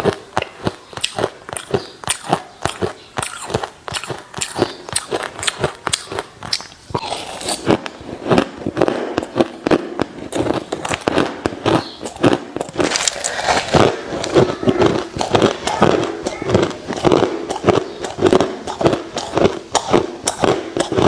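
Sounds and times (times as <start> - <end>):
ice being chewed: 0.0 - 21.0.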